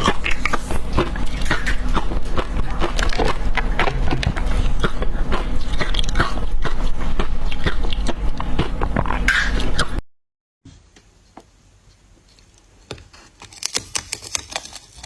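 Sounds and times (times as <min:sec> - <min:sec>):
ice crunching while chewed: 0:00.0 - 0:09.8, 0:13.1 - 0:15.0.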